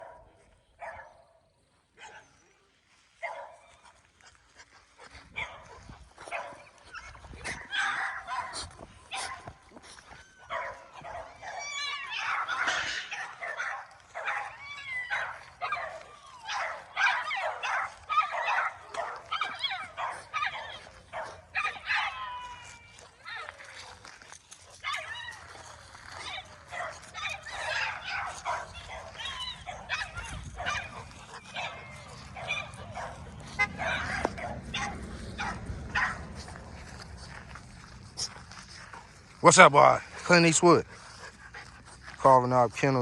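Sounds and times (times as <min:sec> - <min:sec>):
puppy whining and barking: 0:06.4 - 0:24.0, 0:24.8 - 0:36.3.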